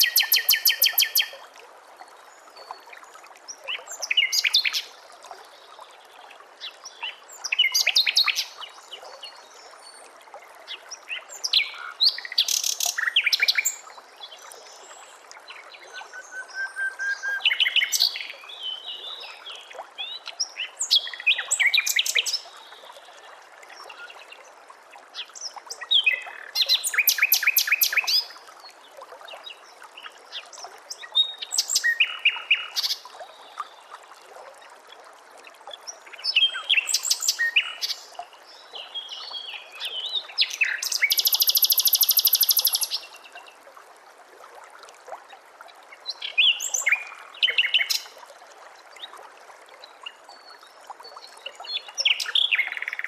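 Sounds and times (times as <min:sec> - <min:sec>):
songbird trilling: 0:00.0 - 0:01.3, 0:40.6 - 0:43.0.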